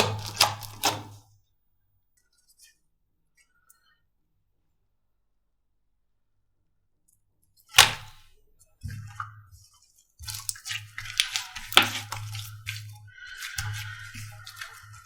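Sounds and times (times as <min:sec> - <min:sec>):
slime popping: 0:00.0 - 0:01.1, 0:10.2 - 0:12.8
slime squishing and crackling: 0:00.0 - 0:01.2, 0:07.7 - 0:08.2, 0:10.2 - 0:15.0.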